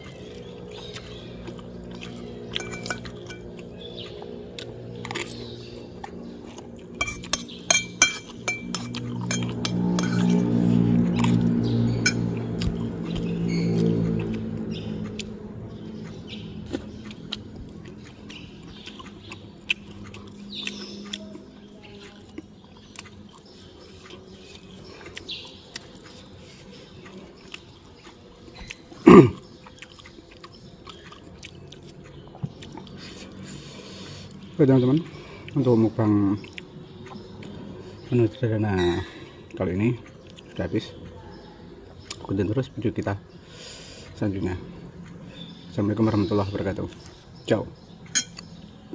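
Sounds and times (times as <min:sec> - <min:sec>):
person chewing food: 0:00.0 - 0:35.6, 0:36.4 - 0:38.1, 0:39.4 - 0:40.6
cutlery clinking against a plate: 0:02.5 - 0:03.6, 0:07.0 - 0:10.6, 0:12.0 - 0:12.3, 0:48.1 - 0:48.5
throat sound: 0:29.0 - 0:29.5.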